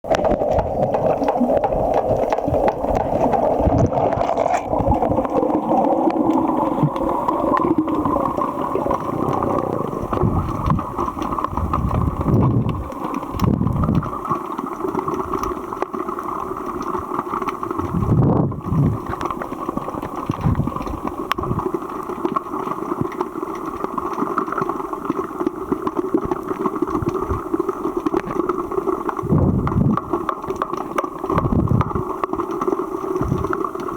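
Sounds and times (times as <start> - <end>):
low thuds and gurgles: 0.0 - 14.3, 16.8 - 21.8, 26.3 - 32.2, 33.2 - 33.9
muffled underwater water rushing: 0.0 - 33.9.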